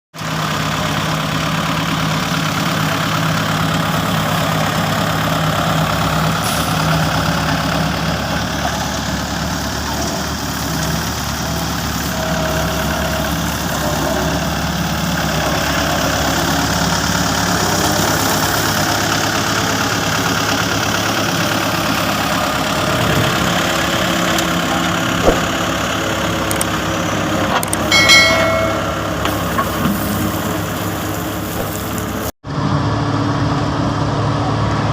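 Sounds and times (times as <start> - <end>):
heavy machinery engine running: 0.2 - 34.9
brief high tone: 27.9 - 29.3.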